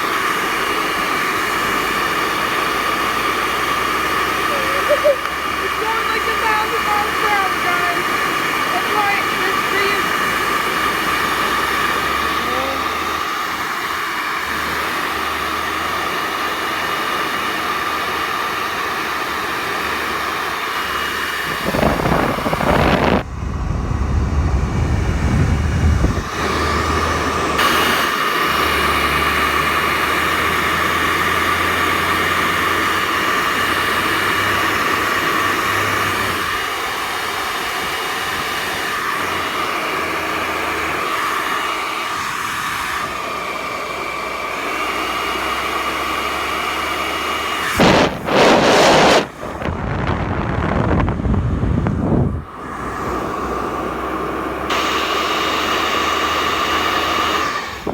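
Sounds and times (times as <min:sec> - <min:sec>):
hair dryer blowing: 0:00.0 - 0:57.9
low rumble: 0:21.8 - 0:26.3.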